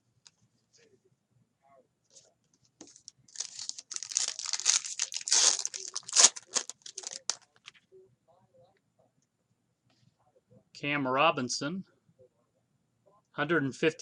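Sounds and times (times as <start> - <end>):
plastic wrapper tearing and crinkling: 2.8 - 7.6.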